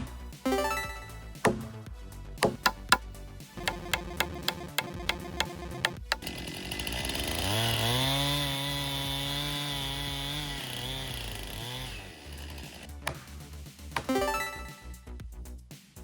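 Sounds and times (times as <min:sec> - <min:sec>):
ticking music: 0:00.5 - 0:01.7, 0:02.4 - 0:03.0, 0:03.6 - 0:06.3, 0:14.1 - 0:15.0
chainsaw revving: 0:06.0 - 0:12.9.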